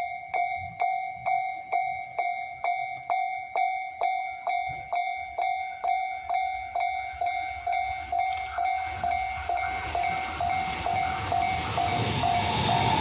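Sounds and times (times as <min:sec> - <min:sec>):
level crossing bell clanging: 0:00.0 - 0:12.5
train rumble: 0:04.0 - 0:13.0.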